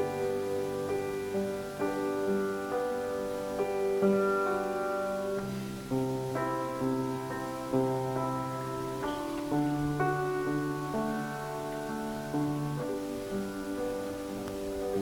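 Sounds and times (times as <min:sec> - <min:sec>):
slow soft piano chords: 0:00.0 - 0:15.0.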